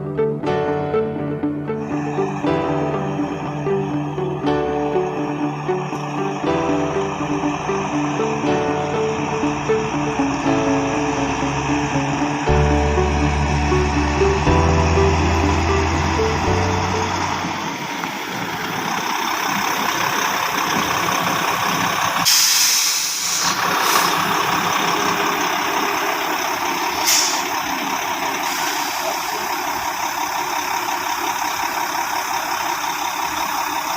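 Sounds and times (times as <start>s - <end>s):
diesel engine running: 0.0s - 33.9s
air hiss bursts: 22.2s - 24.2s, 27.0s - 27.5s.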